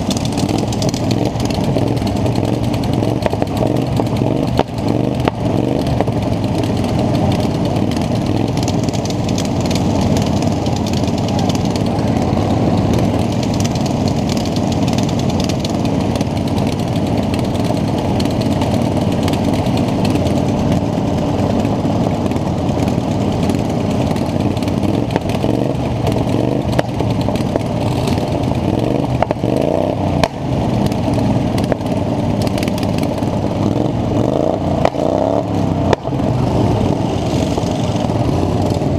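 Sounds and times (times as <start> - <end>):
lawn mower engines running: 0.0 - 38.9.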